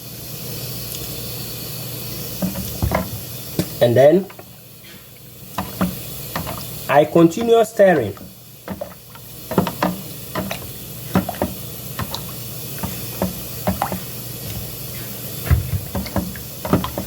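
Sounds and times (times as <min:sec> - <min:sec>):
spoon stirring honey: 0:05.5 - 0:14.8, 0:15.4 - 0:17.0.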